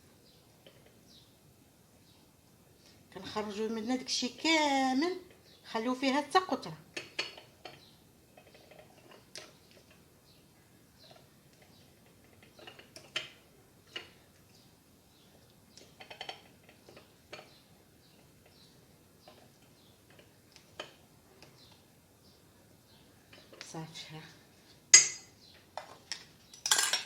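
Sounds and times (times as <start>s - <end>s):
utensils clinking against a bowl: 7.0s - 10.0s, 11.1s - 14.2s, 25.0s - 27.0s.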